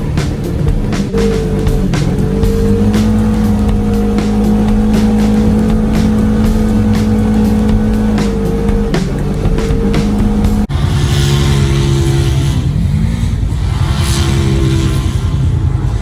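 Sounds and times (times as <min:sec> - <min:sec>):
sharp knocks: 0:00.0 - 0:10.7
engine running at high revs: 0:00.0 - 0:16.0.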